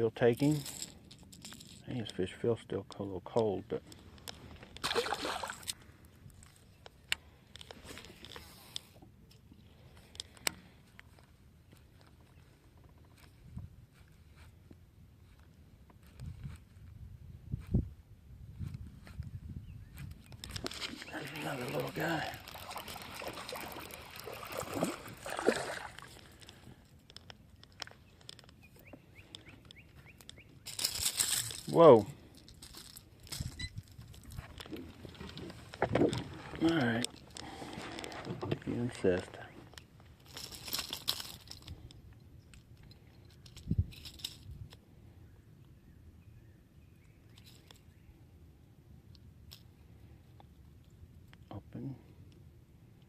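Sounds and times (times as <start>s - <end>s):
water splashing and sloshing: 4.6s - 5.8s, 20.6s - 26.8s, 34.2s - 38.7s
rustling: 20.4s - 42.0s
small clicks and knocks: 26.0s - 31.5s.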